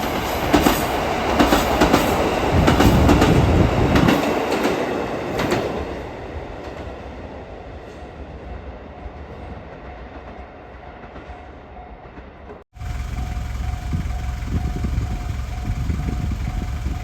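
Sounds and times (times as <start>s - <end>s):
train wheels clacking over rail joints: 0.0s - 5.7s
train rumble: 0.0s - 6.9s, 11.1s - 17.0s.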